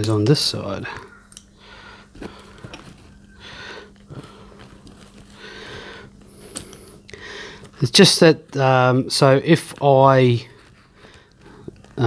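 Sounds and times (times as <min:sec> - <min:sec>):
man breathing through nose: 0:01.5 - 0:07.8.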